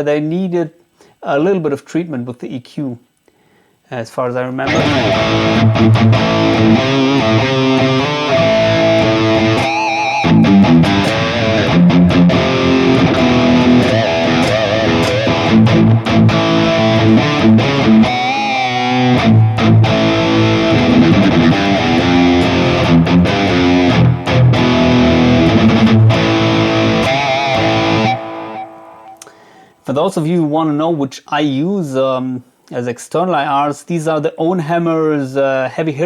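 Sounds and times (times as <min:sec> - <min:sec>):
distorted electric guitar: 0:04.6 - 0:29.4.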